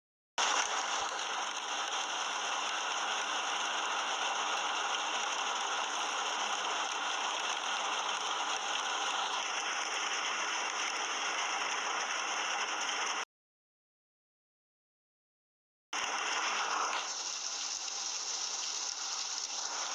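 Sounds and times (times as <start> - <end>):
heavy rain falling: 0.4 - 4.6, 16.0 - 19.9.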